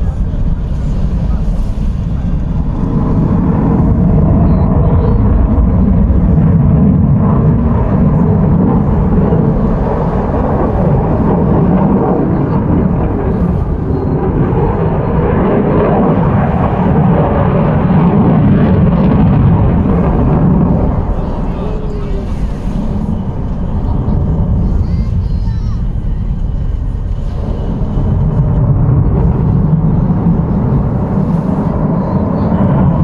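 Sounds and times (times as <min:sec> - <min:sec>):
jet engine rumble: 0:00.0 - 0:33.0.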